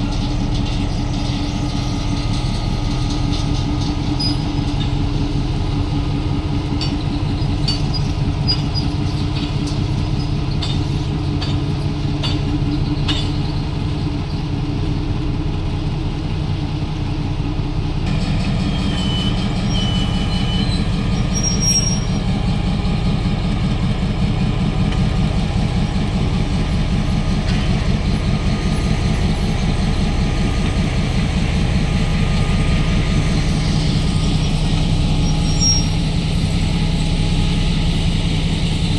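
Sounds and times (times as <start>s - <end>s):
diesel locomotive low drone: 0.0s - 38.9s
brief high squeals: 18.6s - 22.2s, 34.4s - 36.1s.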